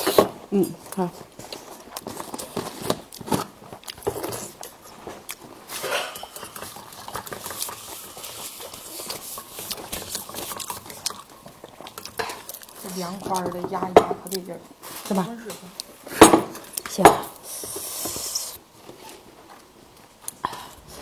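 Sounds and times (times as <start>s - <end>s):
chewing and biting: 0.0s - 13.6s.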